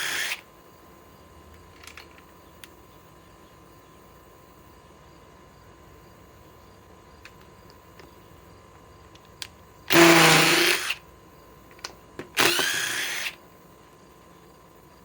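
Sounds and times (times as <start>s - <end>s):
impact driver running: 0.0s - 0.4s, 9.9s - 11.0s, 12.2s - 13.4s.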